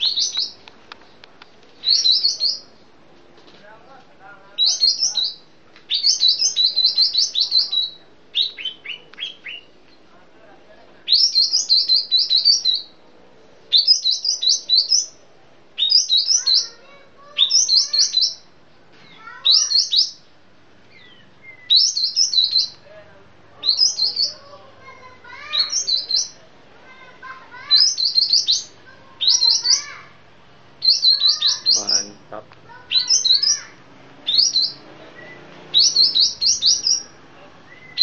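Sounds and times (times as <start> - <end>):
bird singing chirps and whistles: 0.0 - 0.6, 1.8 - 2.7, 4.6 - 9.7, 11.1 - 13.0, 13.7 - 15.2, 15.8 - 16.8, 17.4 - 18.5, 20.9 - 22.8, 23.6 - 24.4, 27.7 - 29.9, 30.8 - 32.1, 32.9 - 33.7, 34.3 - 38.0.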